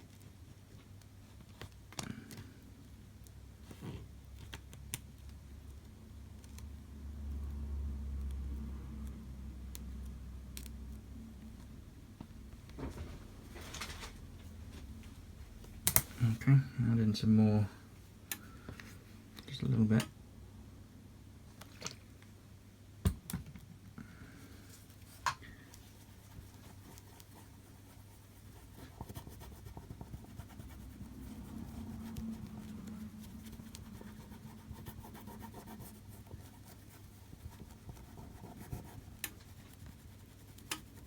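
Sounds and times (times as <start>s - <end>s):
faint scratching and rubbing: 24.4s - 41.0s.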